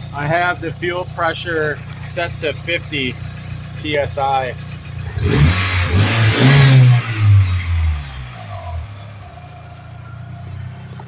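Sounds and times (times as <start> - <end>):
car engine revving and idling: 0.0 - 11.0.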